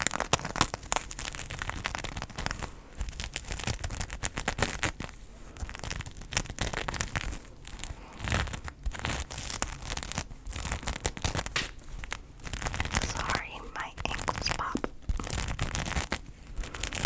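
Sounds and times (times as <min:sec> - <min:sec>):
crinkles and snaps at microphone: 0:00.0 - 0:17.0
loud pops: 0:11.5 - 0:12.0.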